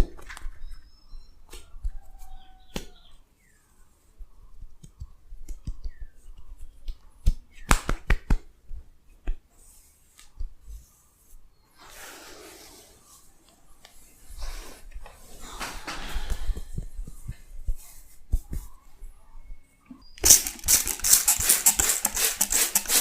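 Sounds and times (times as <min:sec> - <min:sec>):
hands snapping and tapping: 0:04.7 - 0:08.5.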